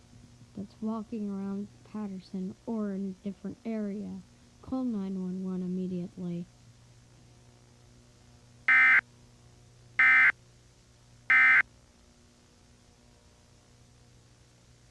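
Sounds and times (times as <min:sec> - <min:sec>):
short buzzy data tone bursts: 0:08.7 - 0:09.0, 0:10.0 - 0:10.3, 0:11.3 - 0:11.6.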